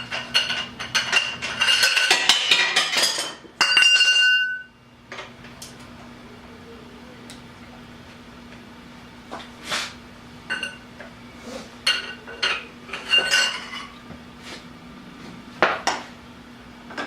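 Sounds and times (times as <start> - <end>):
steel tools clanking: 0.0 - 5.3, 10.5 - 10.8, 11.8 - 14.0.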